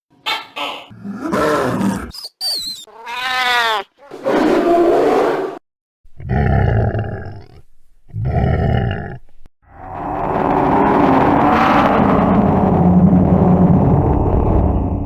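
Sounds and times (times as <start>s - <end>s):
deep rough monster roars: 6.2s - 15.0s.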